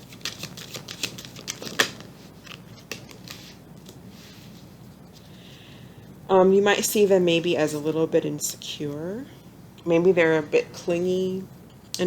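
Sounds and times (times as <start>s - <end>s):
cards clicking and rustling: 0.0s - 4.0s.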